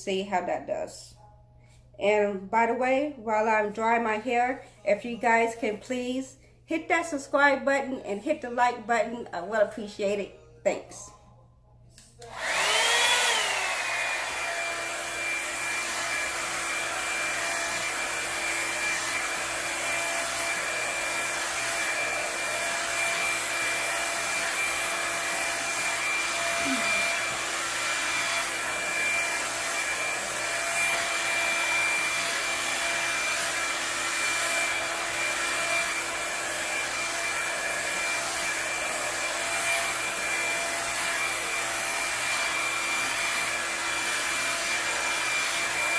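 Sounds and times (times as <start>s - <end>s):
hair dryer motor whine: 12.2s - 45.9s.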